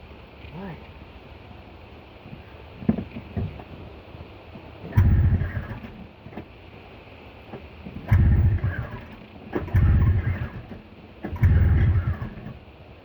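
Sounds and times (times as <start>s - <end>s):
snowmobile engine cranking: 4.8s - 6.1s, 7.8s - 12.7s.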